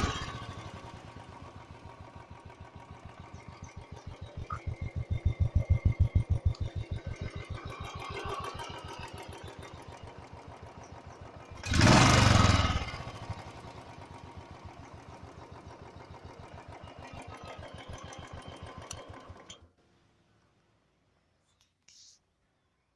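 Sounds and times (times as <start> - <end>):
engine revving: 0.0 - 15.1
motorcycle engine idling: 0.0 - 19.7.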